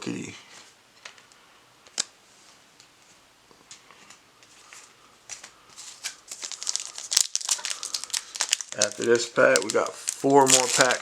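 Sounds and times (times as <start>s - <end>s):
cards tapping and rustling: 5.3s - 11.0s.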